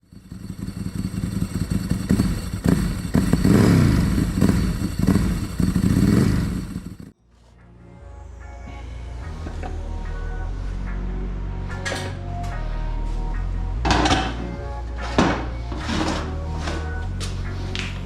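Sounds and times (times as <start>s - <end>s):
motorcycle engine revving: 0.0s - 7.1s
music: 7.2s - 18.0s.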